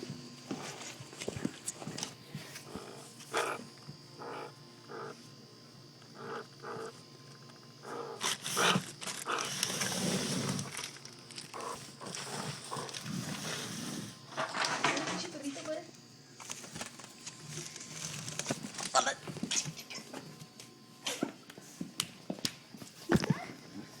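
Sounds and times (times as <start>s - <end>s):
cat hissing: 2.6s - 3.6s, 7.8s - 10.8s.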